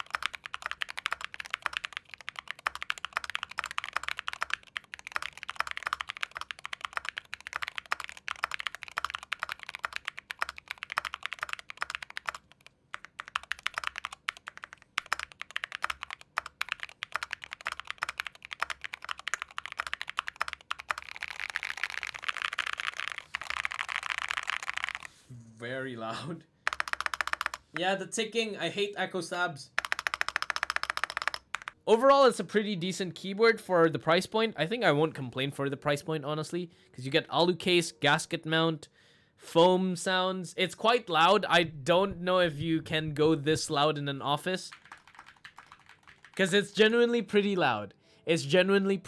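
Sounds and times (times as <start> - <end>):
keyboard stabilisers ticking: 0.0 - 25.1, 26.7 - 27.9, 29.8 - 31.8, 44.5 - 46.6
fast keyboard typing: 0.0 - 25.2, 26.7 - 27.9, 29.8 - 31.8, 43.6 - 47.1.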